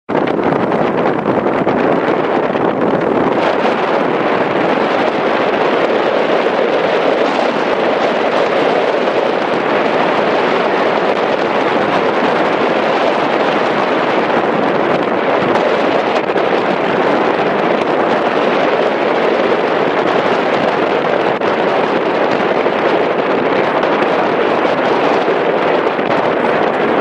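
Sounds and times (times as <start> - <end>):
jet engines: 0.1 - 27.0
strong wind on microphone: 0.1 - 27.0.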